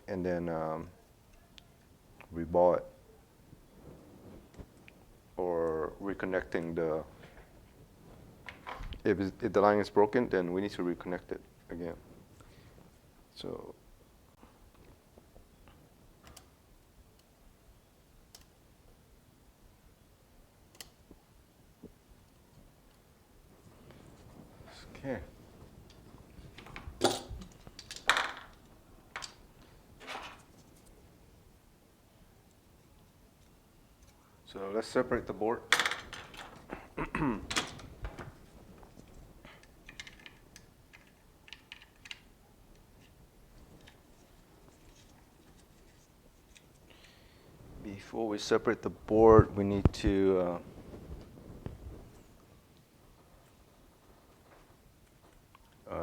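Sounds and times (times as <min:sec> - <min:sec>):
small tools clicking and tapping: 0:39.5 - 0:43.2.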